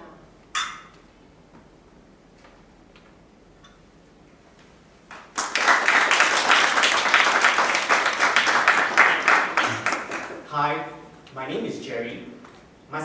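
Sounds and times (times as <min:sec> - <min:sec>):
audience applause: 0:05.1 - 0:10.4.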